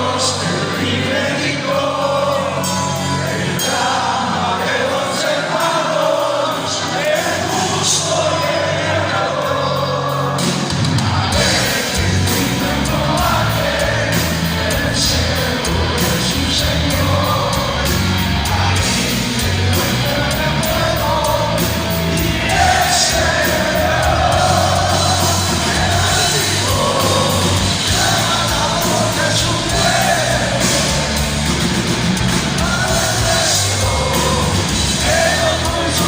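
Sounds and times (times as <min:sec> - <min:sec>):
live heavy metal band: 0:00.0 - 0:36.0
bass and drums beat: 0:09.4 - 0:36.0.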